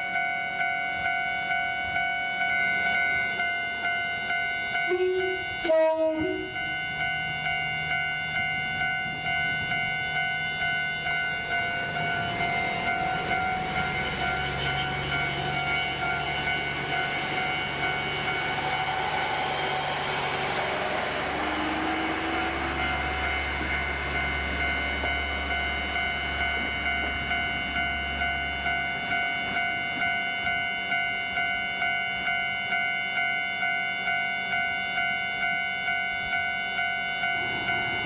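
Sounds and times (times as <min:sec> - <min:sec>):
level-crossing alarm bell ringing: 0:00.0 - 0:38.0
train horn: 0:04.6 - 0:06.8, 0:17.8 - 0:24.0.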